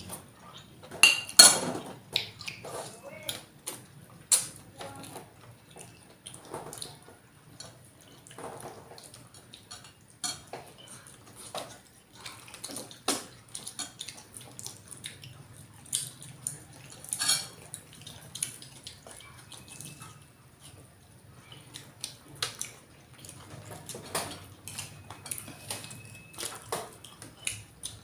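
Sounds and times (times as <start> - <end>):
metal utensils clinking on plates: 0.9 - 1.9, 9.7 - 11.0, 17.1 - 17.6.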